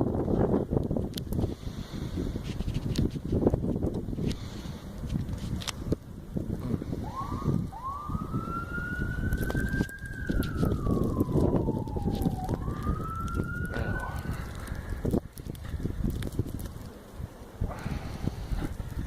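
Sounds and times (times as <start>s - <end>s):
wind buffeting microphone: 0.0s - 19.0s
siren wailing: 7.0s - 15.1s.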